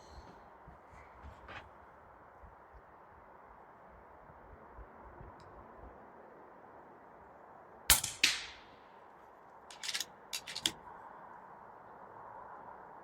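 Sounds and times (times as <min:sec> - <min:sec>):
air rifle shot crack: 0:07.9 - 0:08.7
small mechanical clicks: 0:09.7 - 0:10.8.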